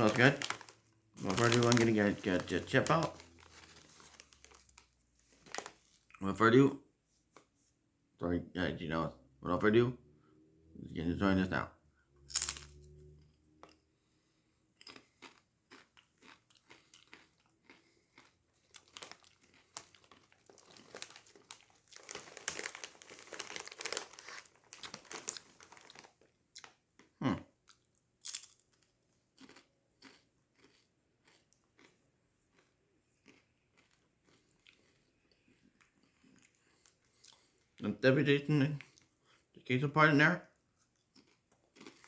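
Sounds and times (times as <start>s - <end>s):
crunching tortilla chips: 0.0s - 6.2s, 12.3s - 12.8s, 14.8s - 37.6s, 40.8s - 42.0s.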